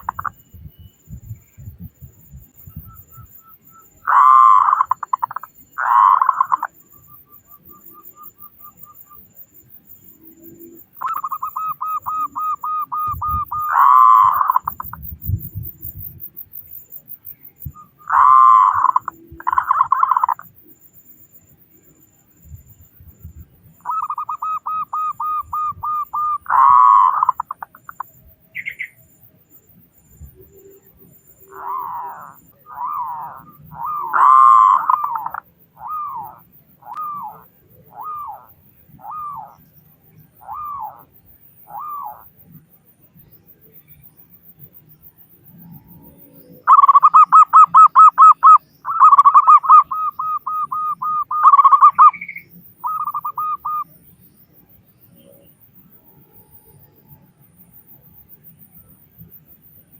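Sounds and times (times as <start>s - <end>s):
doves cooing: 0.0s - 0.4s, 3.0s - 6.9s, 10.2s - 15.2s, 17.6s - 20.5s, 23.8s - 28.1s, 30.4s - 39.6s, 40.4s - 42.3s, 46.0s - 53.9s.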